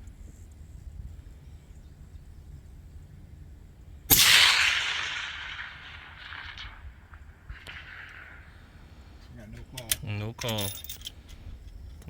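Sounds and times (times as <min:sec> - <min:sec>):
rifle shot with echo: 0:04.1 - 0:09.0.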